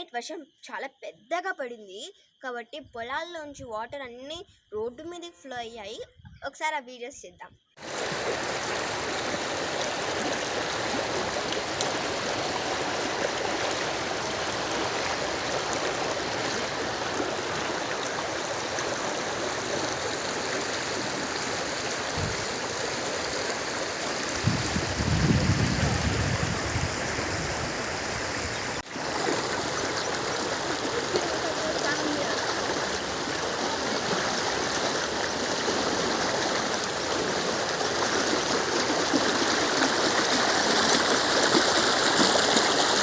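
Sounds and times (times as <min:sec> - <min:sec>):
rainwater rushing: 0:07.8 - 0:43.0.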